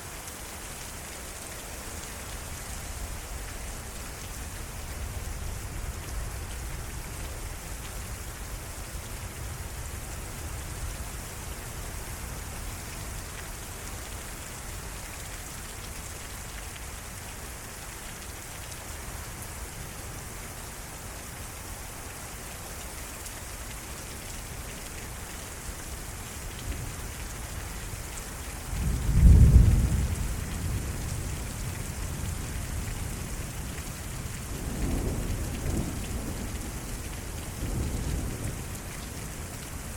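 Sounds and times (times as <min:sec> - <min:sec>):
heavy rain falling: 0:00.0 - 0:39.9
thunder clap and rumble: 0:28.8 - 0:31.2, 0:34.5 - 0:36.9.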